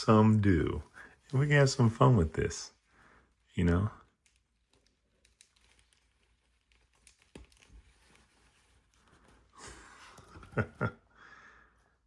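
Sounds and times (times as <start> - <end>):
soft rustle: 0.4 - 10.9.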